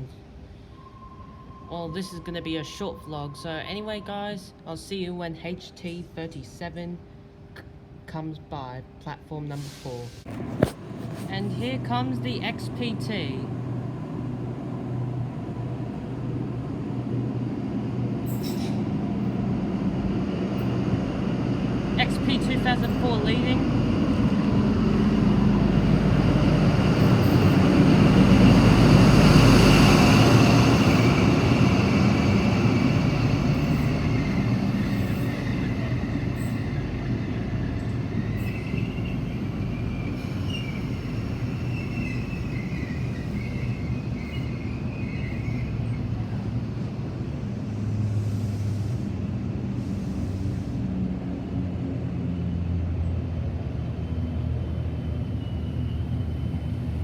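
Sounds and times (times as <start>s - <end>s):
train wheel squeal: 0.6s - 4.4s, 18.2s - 18.9s, 26.8s - 46.5s, 54.0s - 57.0s
diesel locomotive engine: 9.5s - 57.0s
train carriages rumbling: 9.6s - 52.3s.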